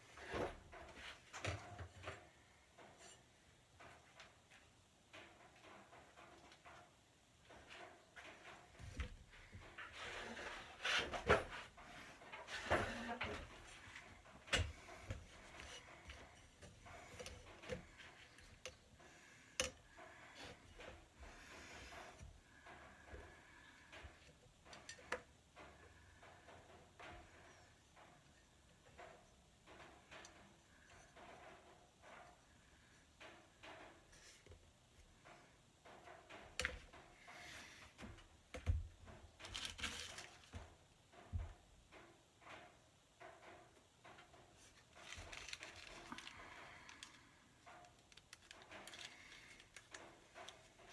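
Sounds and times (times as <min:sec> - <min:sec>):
small parts clicking and knocking: 0:11.2 - 0:50.9
rustling: 0:39.3 - 0:40.8, 0:44.5 - 0:50.9.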